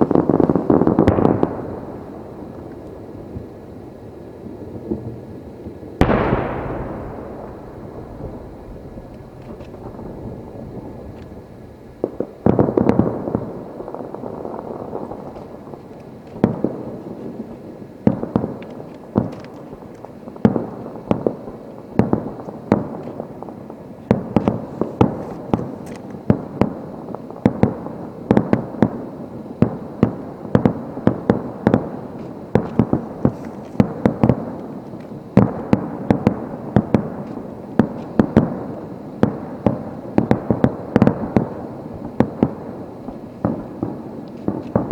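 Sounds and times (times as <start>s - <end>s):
fireworks bangs: 0.0s - 44.9s
rumble of overlapping explosions: 4.7s - 15.8s.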